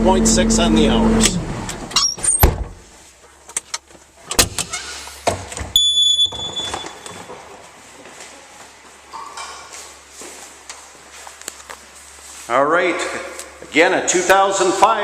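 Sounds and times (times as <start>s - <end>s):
high electronic beep: 5.8s - 7.0s.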